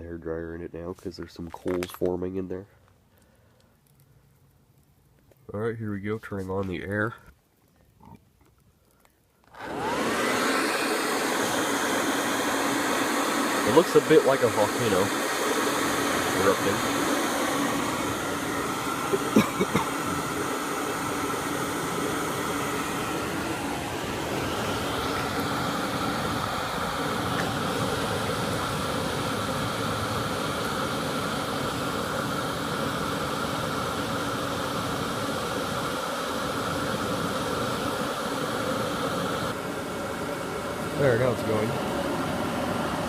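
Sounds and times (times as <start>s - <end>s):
hair dryer blowing air: 9.5s - 43.0s.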